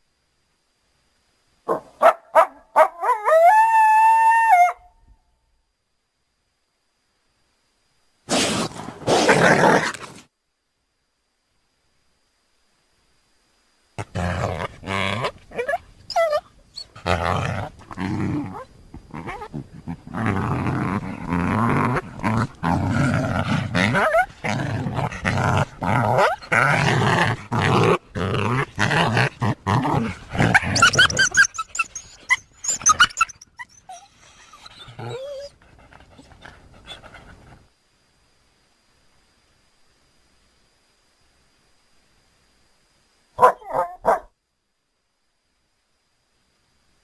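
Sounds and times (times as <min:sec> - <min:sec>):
high-pitched yelping whines: 0:14.8 - 0:17.1, 0:30.4 - 0:35.5
dog-like creature growling: 0:17.0 - 0:31.4.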